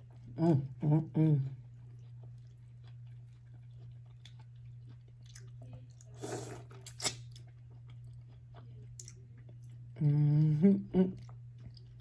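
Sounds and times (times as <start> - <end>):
steady low hum: 0.0 - 12.0
close chewing and biting: 1.6 - 9.8.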